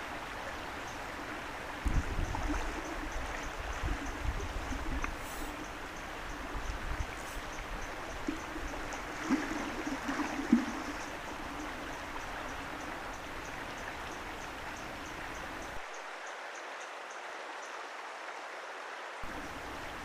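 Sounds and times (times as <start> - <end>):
river flowing: 0.0 - 20.0
knocks or splashes: 9.2 - 10.9.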